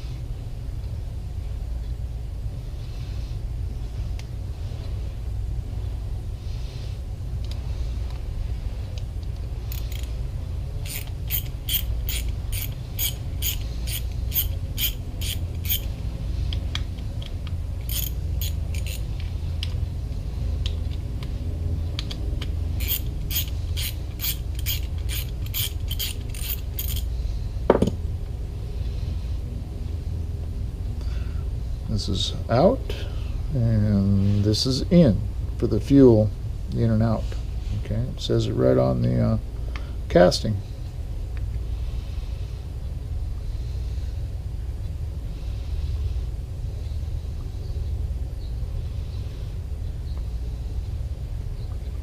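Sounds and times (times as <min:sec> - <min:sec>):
steady low hum: 0:00.0 - 0:52.0
ratchet wrench clicking: 0:09.7 - 0:10.1, 0:10.8 - 0:15.9, 0:17.0 - 0:19.1, 0:22.0 - 0:27.1.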